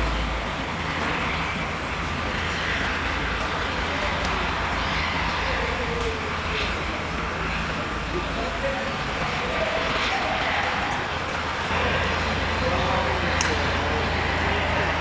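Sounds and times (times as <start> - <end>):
faint high whine: 0.0 - 5.7
helicopter turbine and rotor: 0.0 - 15.0.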